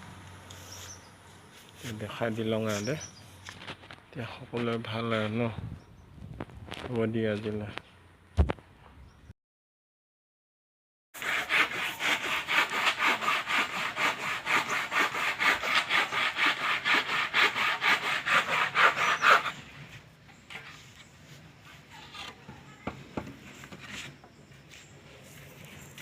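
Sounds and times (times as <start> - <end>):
hand saw cutting: 11.2 - 19.6.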